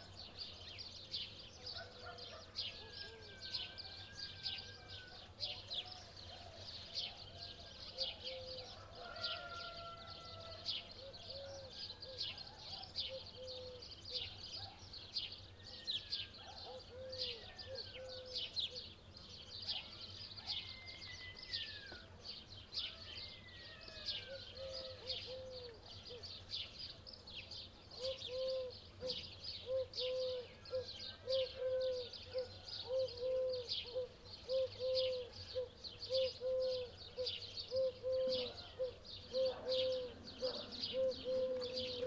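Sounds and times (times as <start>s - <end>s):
dove cooing: 8.0s - 9.2s, 11.0s - 12.4s, 13.1s - 14.3s, 16.6s - 18.4s, 24.3s - 26.2s, 28.0s - 42.0s
small birds chirping: 24.0s - 42.0s.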